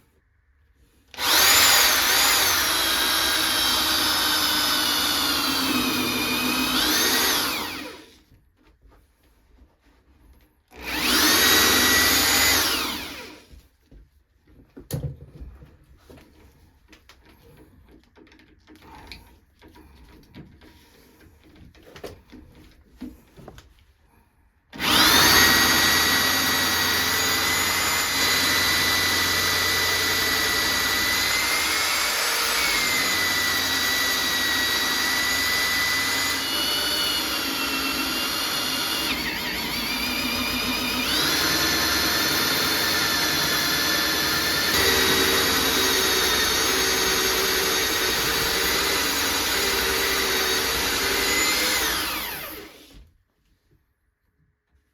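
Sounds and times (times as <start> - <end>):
electric drill boring wood: 1.1 - 8.2, 10.7 - 13.5, 24.8 - 53.0.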